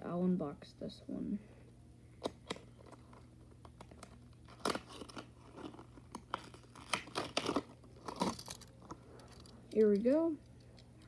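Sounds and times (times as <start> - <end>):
packaging rustling and crinkling: 2.4 - 9.5.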